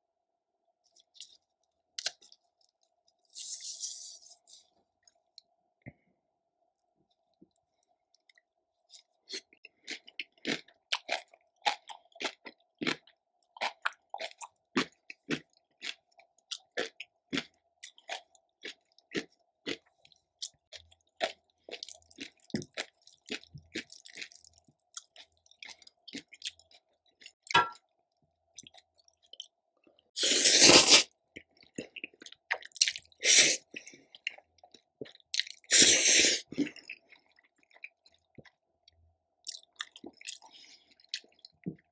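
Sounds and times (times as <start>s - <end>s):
close crunchy chewing: 7.5s - 27.5s, 28.5s - 41.9s.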